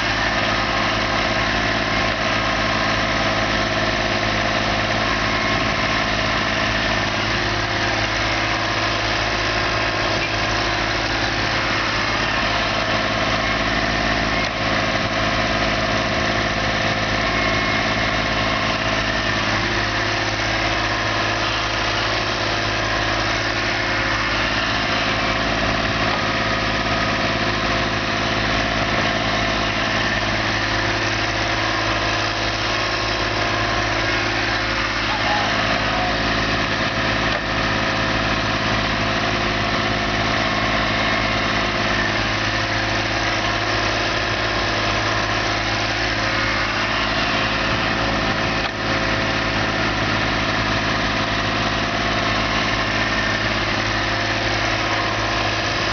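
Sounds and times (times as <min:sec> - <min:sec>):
diesel engine running steadily: 0:00.0 - 0:55.9.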